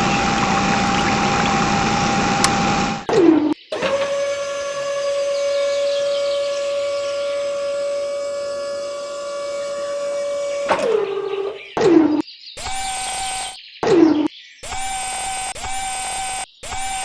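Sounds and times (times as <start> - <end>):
small electric motor whining: 14.6 - 17.0.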